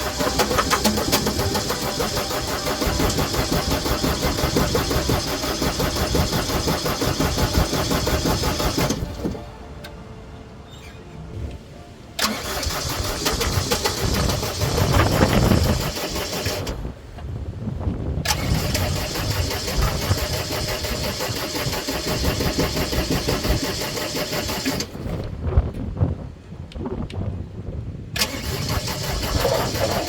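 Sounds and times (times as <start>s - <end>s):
diesel engine cranking on starter: 0.0s - 9.9s, 12.2s - 17.1s, 18.2s - 25.3s, 28.2s - 30.0s.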